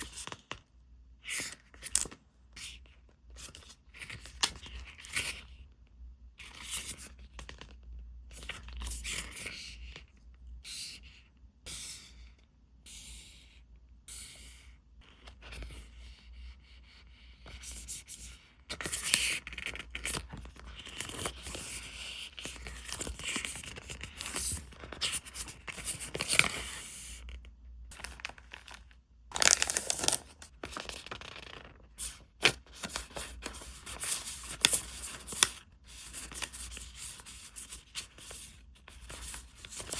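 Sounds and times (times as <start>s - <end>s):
packaging rustling and tearing: 27.9s - 35.6s.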